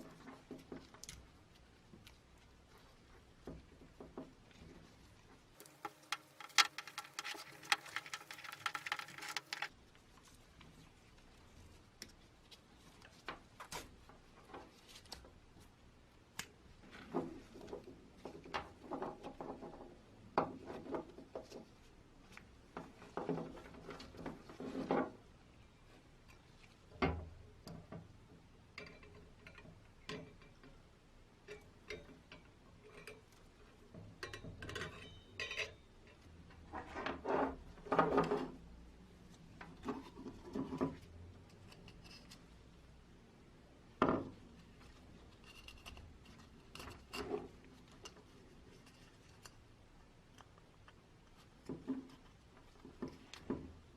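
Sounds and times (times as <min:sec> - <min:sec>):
metal parts clinking and tapping: 0:05.6 - 0:09.7, 0:34.2 - 0:36.2
metal scraping: 0:05.6 - 0:09.7.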